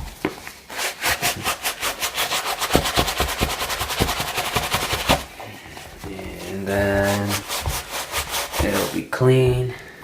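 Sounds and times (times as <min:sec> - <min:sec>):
brush scrubbing a sneaker: 0:00.7 - 0:05.3, 0:06.0 - 0:09.2.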